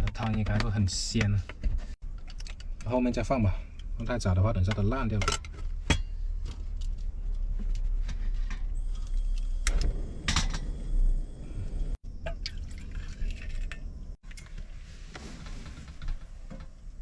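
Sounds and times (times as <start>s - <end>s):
steady low rumble: 5.7s - 14.2s
water pouring and sloshing in pot: 12.2s - 14.6s.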